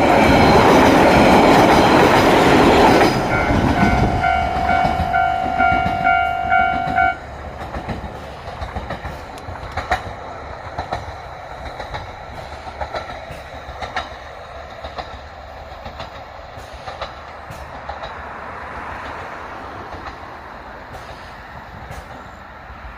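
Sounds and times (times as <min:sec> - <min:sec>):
railcar rumbling past: 0:00.0 - 0:22.9
level crossing bell ringing: 0:03.3 - 0:07.2.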